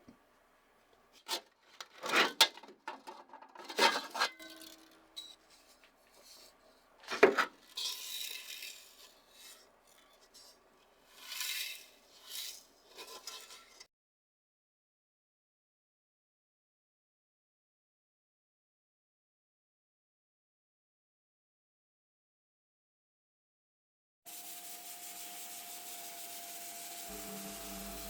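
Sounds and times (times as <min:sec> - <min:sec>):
tool scraping strokes: 0:03.8 - 0:13.8, 0:24.3 - 0:28.0
rasping filing: 0:24.3 - 0:28.0.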